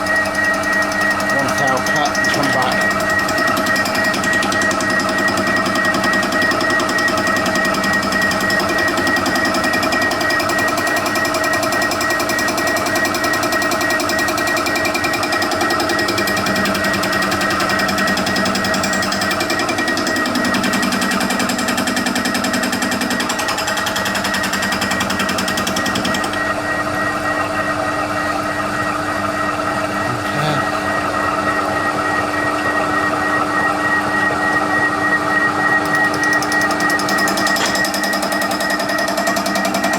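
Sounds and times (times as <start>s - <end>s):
machine gearing whine: 0.0s - 39.9s
milling cutter chatter: 1.3s - 3.0s.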